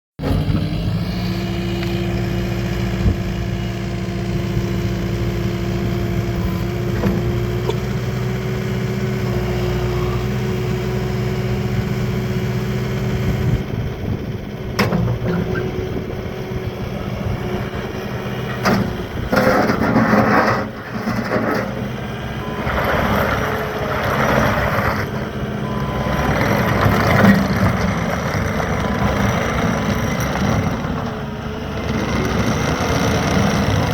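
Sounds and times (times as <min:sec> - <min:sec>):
diesel engine idling: 0:01.4 - 0:19.3.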